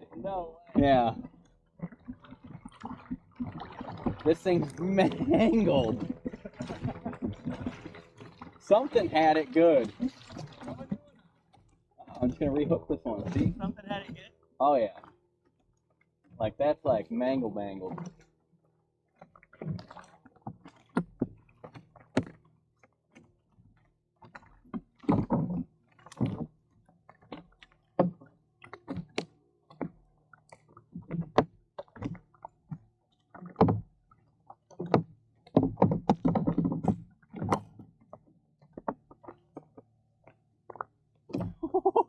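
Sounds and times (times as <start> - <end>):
gear knocking against kayak hull: 0.5 - 11.2, 33.4 - 39.8.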